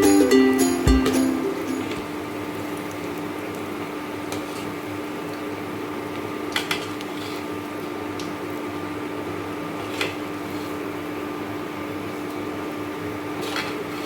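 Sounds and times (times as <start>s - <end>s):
fan humming: 0.0s - 2.8s.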